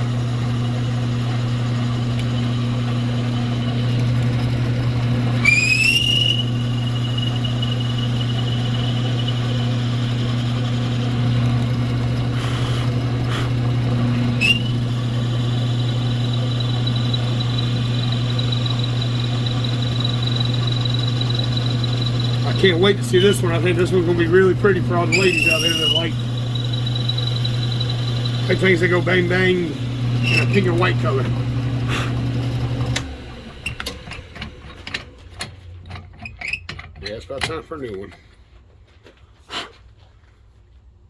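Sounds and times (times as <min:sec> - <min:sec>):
power tool motor humming: 0:00.0 - 0:34.9
high squealing whine: 0:05.3 - 0:10.8, 0:14.1 - 0:35.0.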